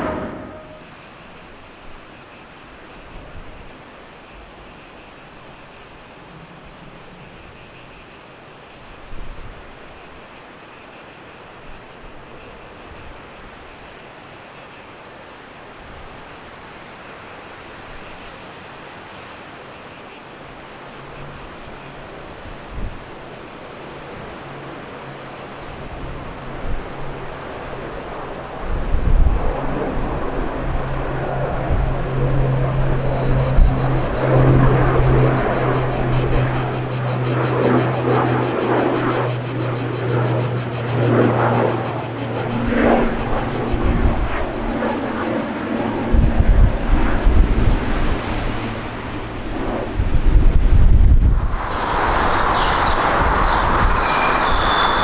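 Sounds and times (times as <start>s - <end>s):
aircraft engines humming: 0.0s - 1.0s, 25.6s - 55.0s
insects chirring: 25.4s - 55.0s.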